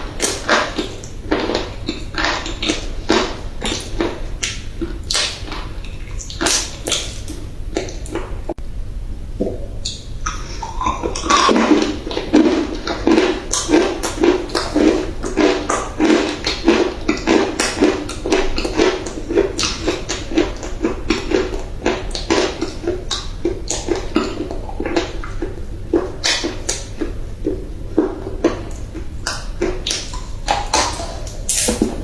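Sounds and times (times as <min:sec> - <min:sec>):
chewing crunchy clay: 0:10.4 - 0:32.0.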